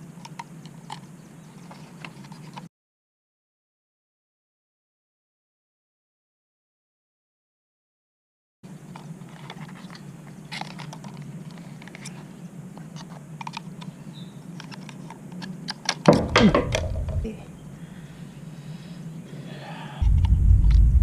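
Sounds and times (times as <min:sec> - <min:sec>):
steady low hum: 0:08.6 - 0:21.0
clatter of knocks: 0:16.0 - 0:17.3.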